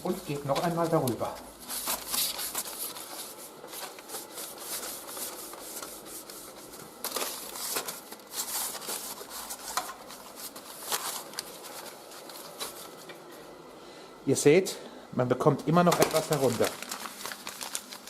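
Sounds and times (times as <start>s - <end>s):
newspaper scrubbing glass: 0.6s - 12.8s.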